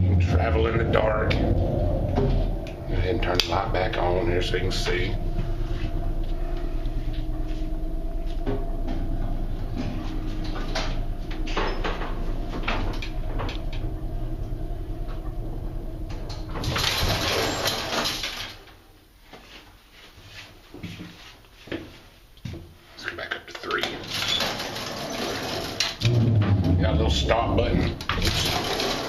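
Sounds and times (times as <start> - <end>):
scraping rush: 0.0 - 18.2
elevator machinery hum: 0.0 - 19.0, 24.0 - 29.0.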